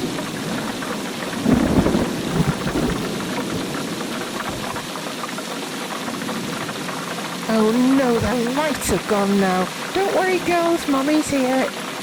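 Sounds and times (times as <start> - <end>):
rolling thunder: 0.0 - 4.9
steady rain: 0.0 - 12.0.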